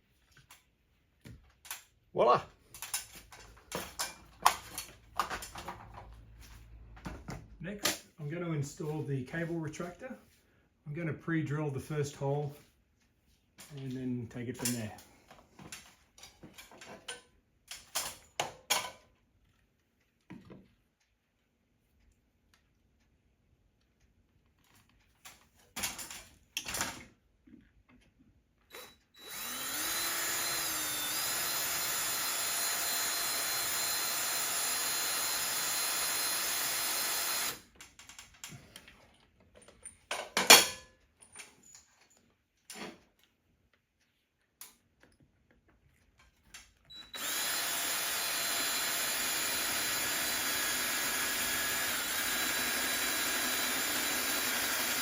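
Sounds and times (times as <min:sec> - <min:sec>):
power drill drilling: 0:28.7 - 0:37.6, 0:46.9 - 0:55.0.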